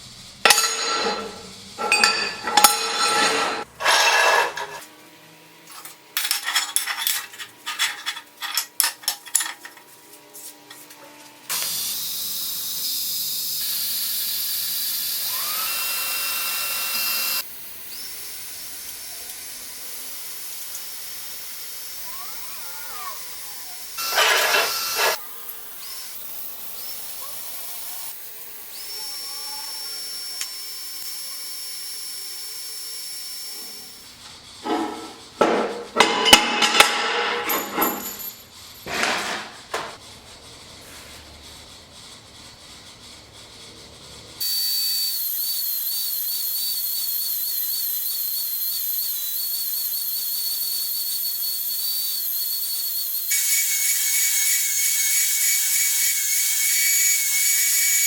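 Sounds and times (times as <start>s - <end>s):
metal parts clinking: 0.5s - 4.8s, 5.8s - 9.9s, 24.0s - 25.6s, 36.0s - 39.5s.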